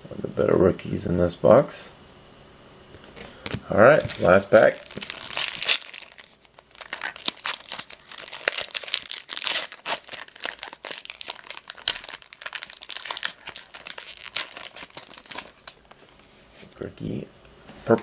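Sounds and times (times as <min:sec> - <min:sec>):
wrapper tearing and crinkling: 0:04.0 - 0:16.1.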